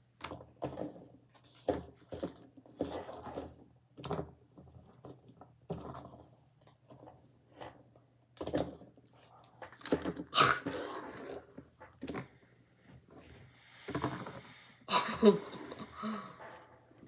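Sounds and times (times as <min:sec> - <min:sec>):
short vocal sound: 0:10.4 - 0:10.9.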